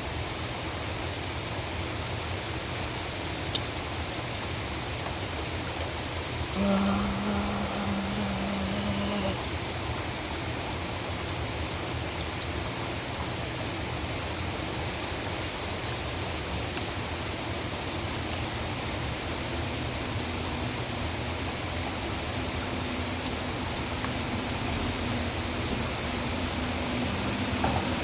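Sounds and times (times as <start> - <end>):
constant rushing noise: 4.2 - 9.5, 11.2 - 28.0
diesel engine humming: 6.5 - 9.5, 18.2 - 28.0.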